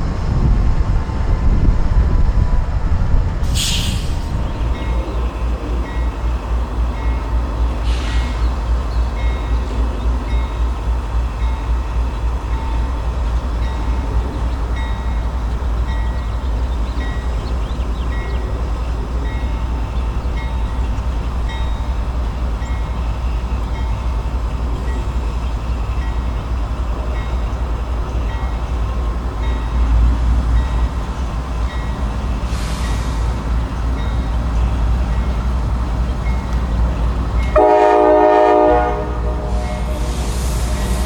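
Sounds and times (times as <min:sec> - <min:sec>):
locomotive rumble: 0:00.0 - 0:41.0
locomotive bell ringing: 0:21.4 - 0:22.0.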